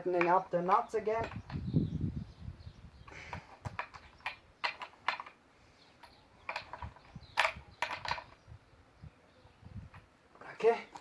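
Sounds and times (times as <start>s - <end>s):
metal clicks and clinks: 6.0s - 8.4s.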